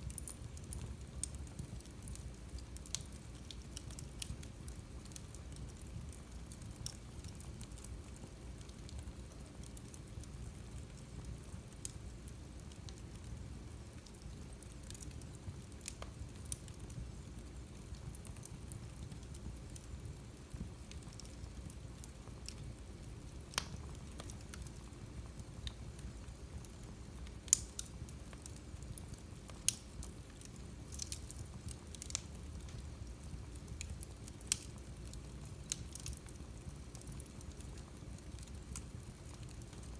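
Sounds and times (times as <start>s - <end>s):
wood fire crackling: 0.0s - 39.9s
sharp pops and snaps: 23.5s - 24.7s, 25.6s - 28.7s, 29.4s - 32.8s.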